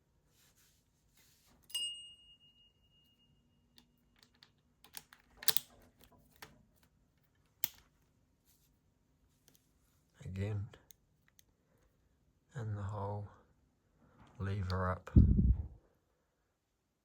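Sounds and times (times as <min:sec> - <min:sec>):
metal lock clicking: 0:04.2 - 0:05.9, 0:07.6 - 0:07.8.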